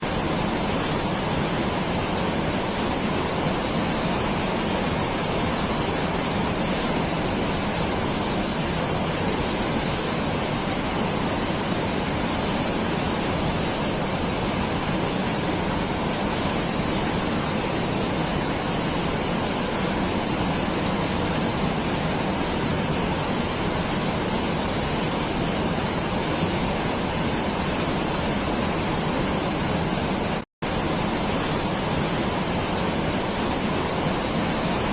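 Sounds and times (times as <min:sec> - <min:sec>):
water rushing: 0:00.0 - 0:34.9.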